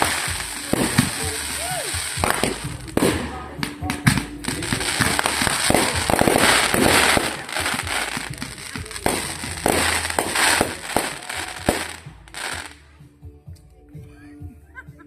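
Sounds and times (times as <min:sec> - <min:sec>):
fireworks bangs and crackling: 0:00.0 - 0:12.8.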